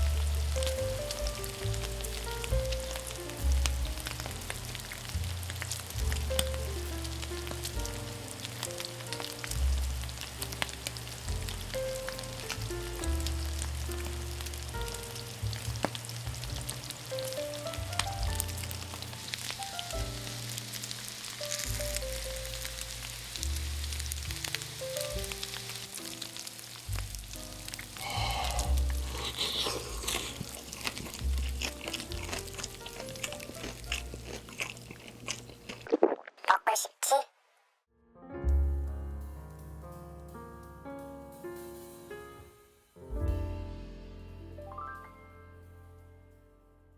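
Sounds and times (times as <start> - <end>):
rice sizzling on a griddle: 0.0 - 33.9.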